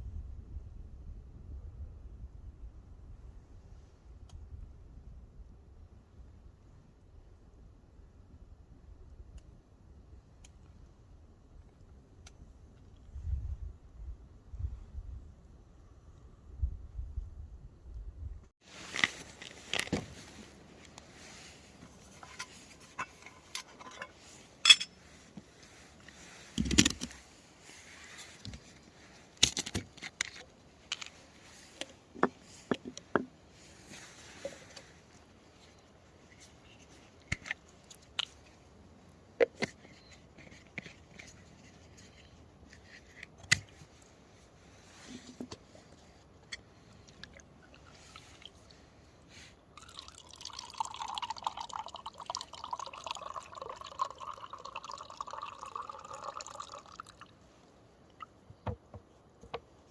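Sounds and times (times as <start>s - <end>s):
utensils scraping against a pot: 22.1s - 25.1s.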